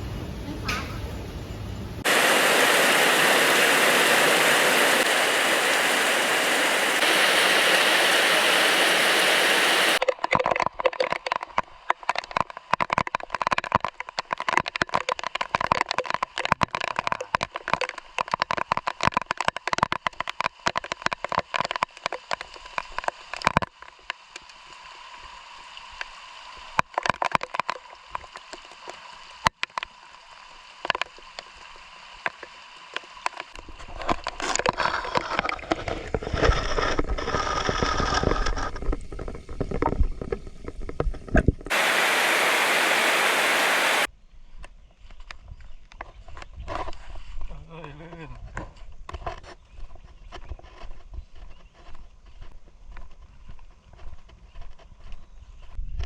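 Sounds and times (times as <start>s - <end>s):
heavy rainfall hiss: 2.0s - 10.0s, 41.7s - 44.1s
raindrops ticking: 2.1s - 23.5s.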